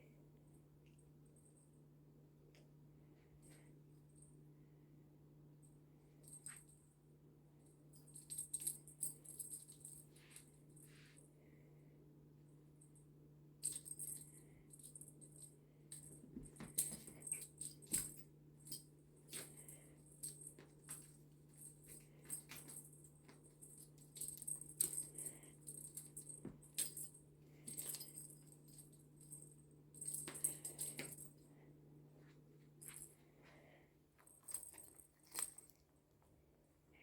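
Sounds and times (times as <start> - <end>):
faint low hum: 0.0 - 37.0
cat toy jingling and rattling: 13.6 - 31.4, 34.2 - 35.9.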